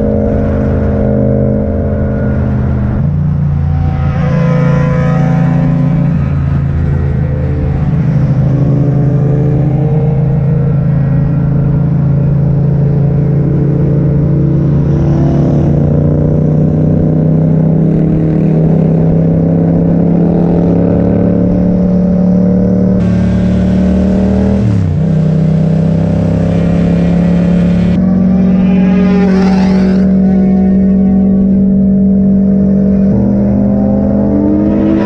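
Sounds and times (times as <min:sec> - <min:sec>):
motorcycle engine running: 0:21.3 - 0:35.0.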